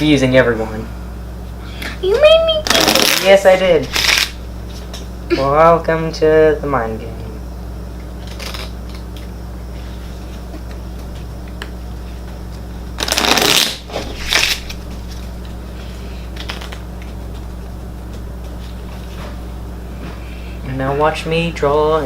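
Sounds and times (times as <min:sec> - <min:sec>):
steady low hum: 0:00.0 - 0:22.0
playing cards shuffled: 0:02.6 - 0:05.1, 0:08.2 - 0:09.3, 0:10.2 - 0:15.5, 0:16.3 - 0:17.5.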